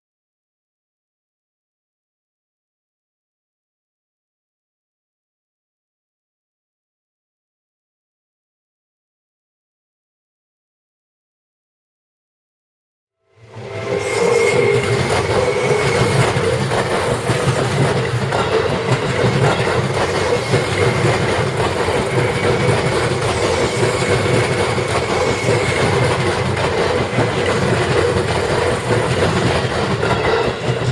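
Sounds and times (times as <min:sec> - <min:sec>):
electric train passing: 0:13.3 - 0:30.9.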